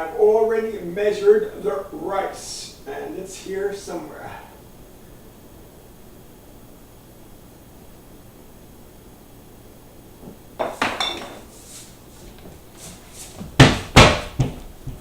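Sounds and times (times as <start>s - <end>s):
kitchenware clinking on a counter: 10.6s - 11.5s
loud knocks: 13.5s - 15.0s.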